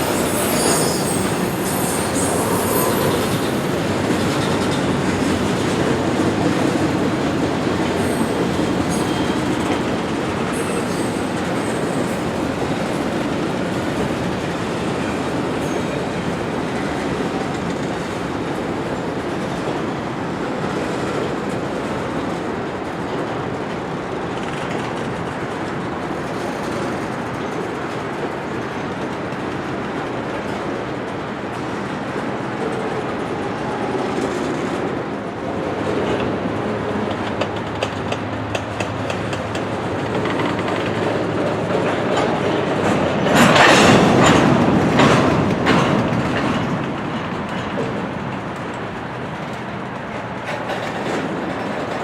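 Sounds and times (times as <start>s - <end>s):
high wheel squeals: 0.0s - 4.6s, 7.9s - 9.8s, 10.4s - 12.4s
freight train wheels clattering: 0.0s - 19.8s, 20.4s - 52.0s.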